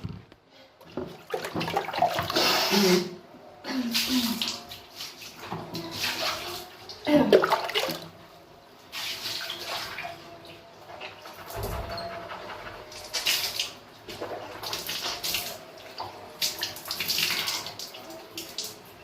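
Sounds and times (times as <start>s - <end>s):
water splashing and pouring: 1.0s - 3.0s, 3.9s - 8.2s, 8.9s - 10.2s.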